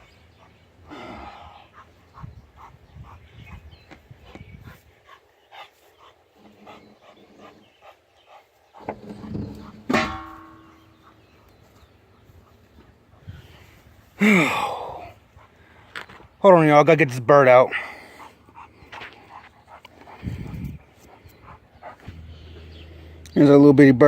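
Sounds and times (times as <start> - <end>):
ringing metal clang: 9.9 - 10.9.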